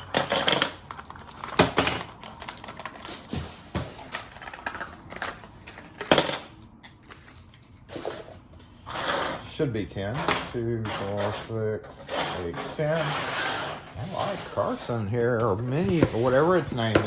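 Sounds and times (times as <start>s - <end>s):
packaging rustling and crinkling: 0.9s - 5.7s.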